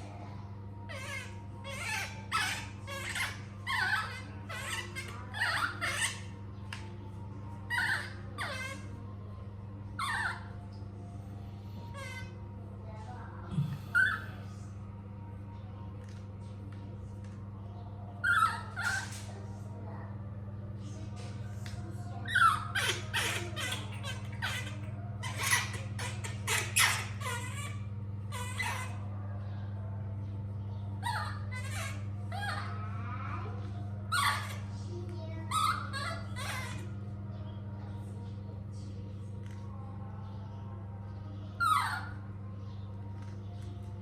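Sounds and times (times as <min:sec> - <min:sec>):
steady low hum: 0:00.0 - 0:44.0
baby monkey squealing: 0:00.8 - 0:12.5, 0:13.5 - 0:14.7, 0:18.2 - 0:19.9, 0:20.8 - 0:29.4, 0:30.7 - 0:37.0, 0:41.2 - 0:43.4.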